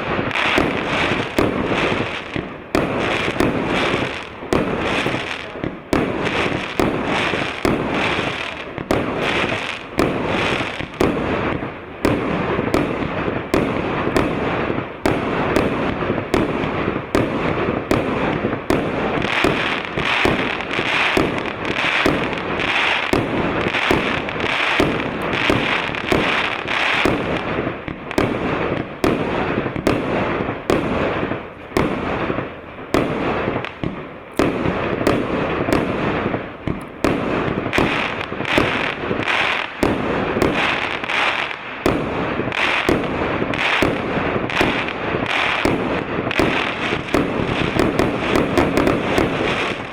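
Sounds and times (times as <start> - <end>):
firework launch thumps and bursts: 0.0 - 22.4, 23.1 - 31.0, 31.8 - 32.3, 32.9 - 41.1, 42.8 - 49.9
firework crackling: 0.0 - 49.9.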